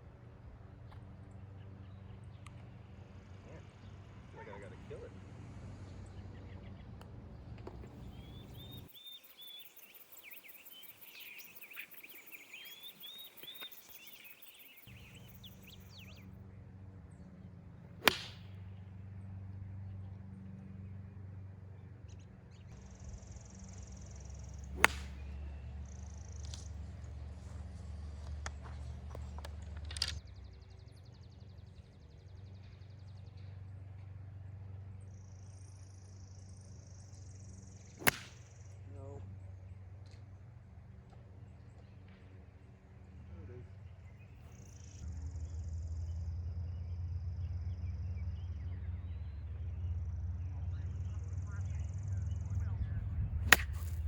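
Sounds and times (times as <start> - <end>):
birds chirping: 6.0 - 16.3, 22.6 - 27.1
golf club striking ball: 18.0 - 18.5, 24.7 - 25.4, 38.0 - 38.4, 53.4 - 54.0.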